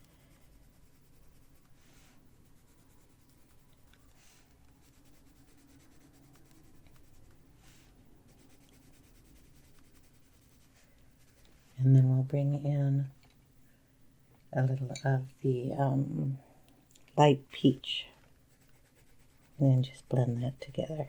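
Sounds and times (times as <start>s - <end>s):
pencil scratching on paper: 0.0s - 11.6s, 18.3s - 21.0s.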